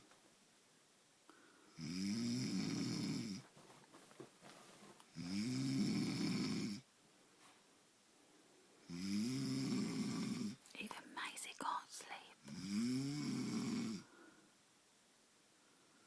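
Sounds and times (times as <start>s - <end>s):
man snoring: 1.8s - 3.4s, 5.2s - 6.8s, 8.9s - 10.6s, 12.5s - 14.1s.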